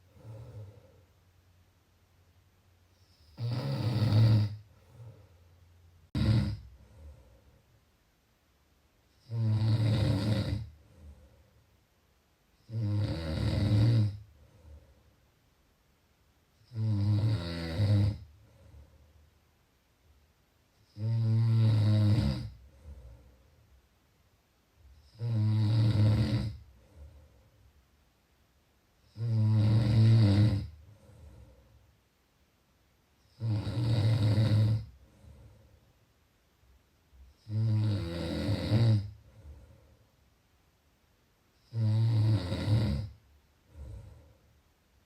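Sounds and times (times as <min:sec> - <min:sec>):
faint breaths: 0:00.0 - 0:01.4, 0:04.5 - 0:08.0, 0:10.6 - 0:12.0, 0:14.2 - 0:15.5, 0:18.2 - 0:19.4, 0:22.5 - 0:23.8, 0:26.6 - 0:27.9, 0:30.7 - 0:32.0, 0:34.8 - 0:36.2, 0:39.0 - 0:40.4, 0:43.5 - 0:44.8
loud low buzzing snores: 0:03.1 - 0:04.6, 0:06.1 - 0:06.7, 0:09.2 - 0:10.7, 0:12.7 - 0:14.2, 0:16.7 - 0:18.3, 0:20.9 - 0:22.6, 0:25.1 - 0:26.6, 0:29.1 - 0:30.8, 0:33.4 - 0:34.9, 0:37.4 - 0:39.2, 0:41.7 - 0:44.2.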